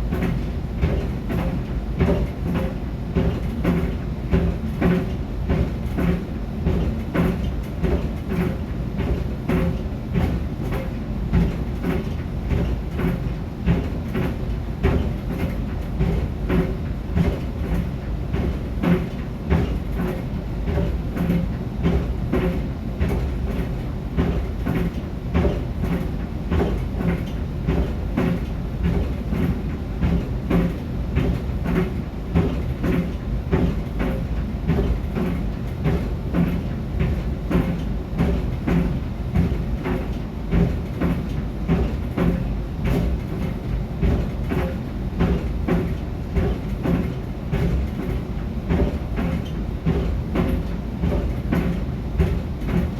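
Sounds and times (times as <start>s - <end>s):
clothes dryer rumble: 0.0s - 52.9s
sneakers thumping in dryer drum: 14.8s - 52.9s.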